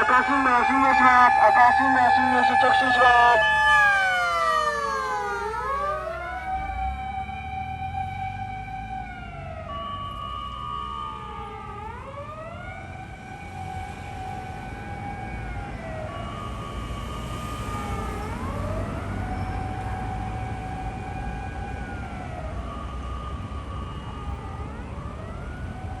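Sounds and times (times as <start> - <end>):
mechanical motor siren wailing: 0.0 - 7.3.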